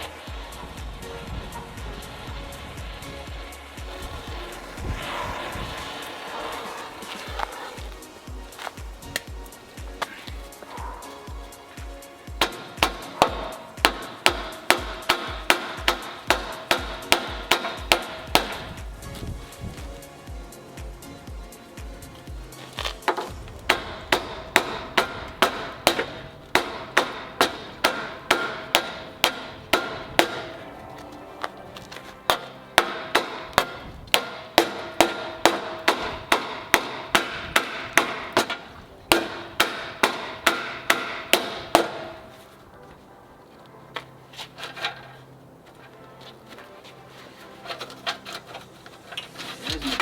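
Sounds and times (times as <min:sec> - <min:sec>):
hammer striking steel: 0:03.9 - 0:20.1, 0:22.9 - 0:42.5.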